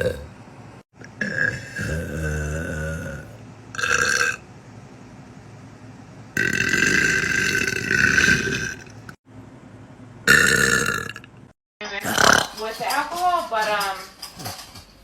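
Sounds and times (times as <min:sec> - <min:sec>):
woman burping: 0:01.1 - 0:03.2.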